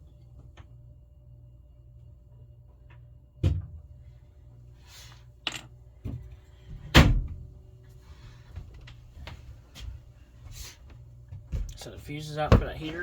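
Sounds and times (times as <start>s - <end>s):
low steady hum: 0.0s - 13.0s
knocks of things handled: 11.3s - 13.0s.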